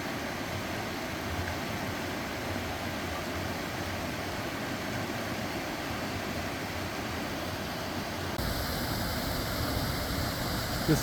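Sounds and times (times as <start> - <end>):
waterfall rushing: 3.7 - 11.0.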